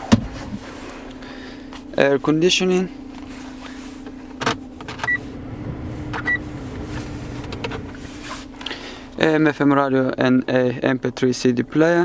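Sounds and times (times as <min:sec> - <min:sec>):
steady low hum: 0:03.6 - 0:09.2.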